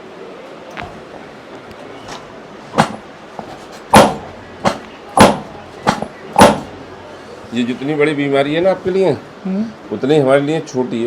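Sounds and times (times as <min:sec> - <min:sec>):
sharp impacts: 0:02.7 - 0:06.8.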